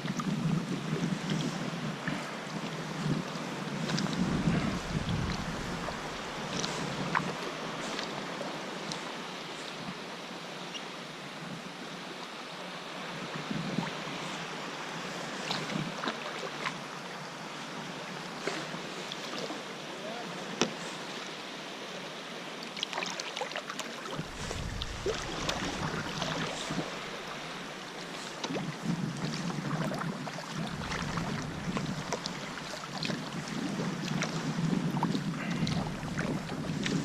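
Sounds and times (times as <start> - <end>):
paddle splashes and drips: 1.2 - 9.1, 15.4 - 16.8, 22.6 - 37.0
water washing: 4.1 - 7.0, 24.2 - 28.6, 30.2 - 37.0
low rumble: 4.2 - 6.4, 24.2 - 27.9, 30.6 - 33.4, 35.4 - 37.0.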